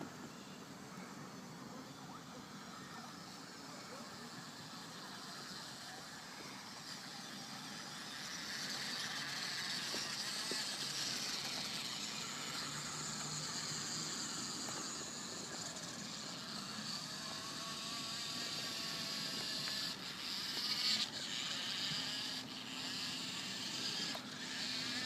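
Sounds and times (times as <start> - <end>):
radio-controlled car whirring: 0.0 - 25.0.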